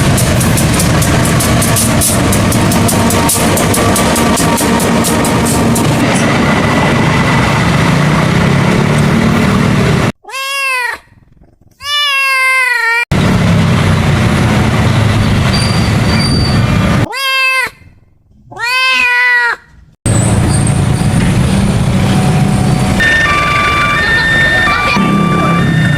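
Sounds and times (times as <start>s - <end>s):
train running noise: 0.0s - 10.1s, 13.1s - 17.1s, 20.1s - 25.9s
cat meowing: 10.2s - 11.2s, 11.8s - 13.0s, 17.1s - 17.8s, 18.5s - 19.6s.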